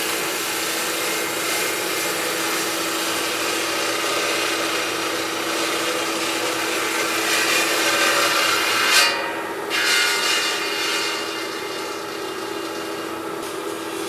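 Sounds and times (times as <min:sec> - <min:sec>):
machine grating marble: 0:00.0 - 0:14.0
short sharp scrape: 0:03.4 - 0:14.0.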